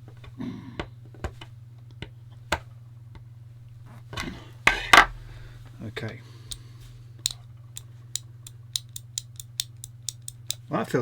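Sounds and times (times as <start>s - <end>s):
plastic parts clicking together: 7.2s - 10.7s.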